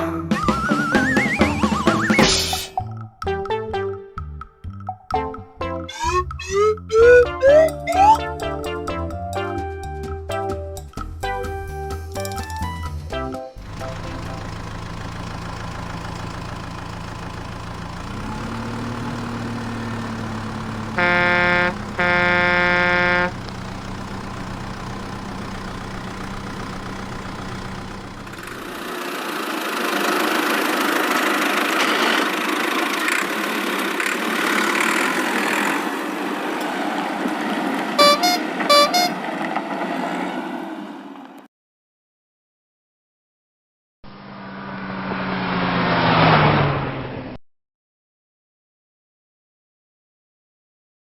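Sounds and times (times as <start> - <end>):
cartoon engine hum: 0.0 - 4.1, 5.1 - 9.1, 13.6 - 35.6, 38.0 - 39.2
cartoon horn blasts: 5.9 - 8.3, 20.9 - 23.4, 38.0 - 39.2
rough noisy engine: 13.6 - 37.2
short horn toots: 20.9 - 23.6, 38.0 - 39.2.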